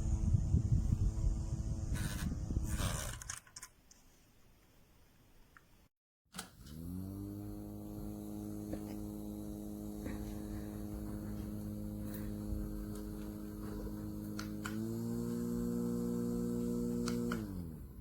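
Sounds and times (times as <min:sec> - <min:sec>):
small fan motor humming: 0:00.0 - 0:02.8, 0:06.5 - 0:18.0
fan switch click: 0:17.0 - 0:17.6.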